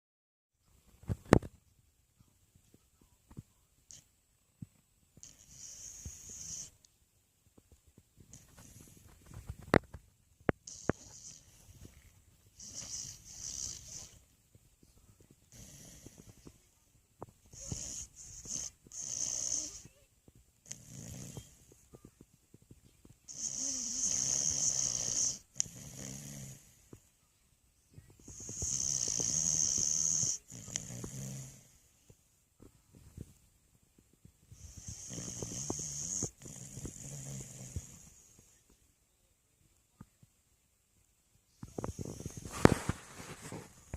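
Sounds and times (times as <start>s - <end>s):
dog snoring: 5.2s - 6.8s, 10.6s - 14.3s, 15.5s - 16.6s, 17.5s - 19.9s, 20.6s - 21.8s, 23.3s - 26.9s, 28.2s - 31.9s, 34.5s - 38.5s, 41.6s - 43.9s.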